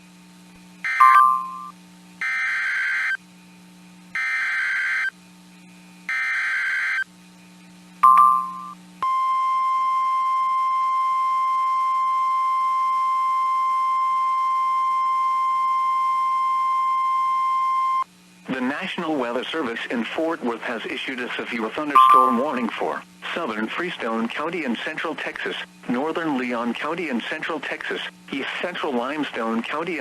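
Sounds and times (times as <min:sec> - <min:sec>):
steady alarm tone: 0:00.8 - 0:03.2, 0:04.2 - 0:05.1, 0:06.1 - 0:07.1, 0:08.0 - 0:09.2, 0:22.0 - 0:22.8
brief beep: 0:00.9 - 0:01.7, 0:22.0 - 0:22.6.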